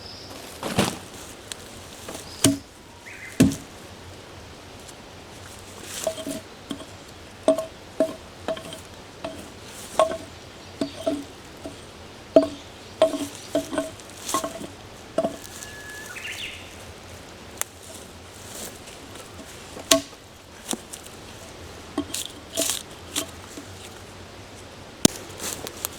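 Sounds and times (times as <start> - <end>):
tool knocking on wood: 2.4 - 2.7, 3.4 - 3.7, 7.5 - 11.8, 12.4 - 15.5
short rising whistle: 15.5 - 16.4.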